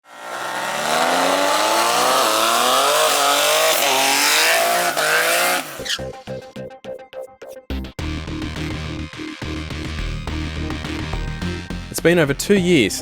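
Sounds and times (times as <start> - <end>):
drag car engine at full throttle: 0.0 - 6.0
background music with a beat: 5.8 - 13.0.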